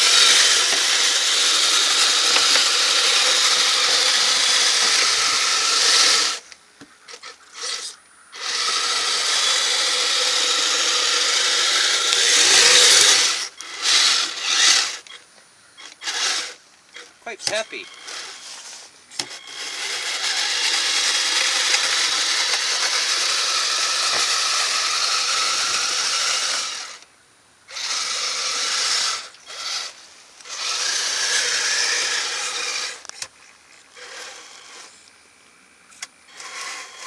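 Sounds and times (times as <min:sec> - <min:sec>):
toy vehicle electric motor and tracks: 0:00.0 - 0:27.1, 0:27.7 - 0:37.0.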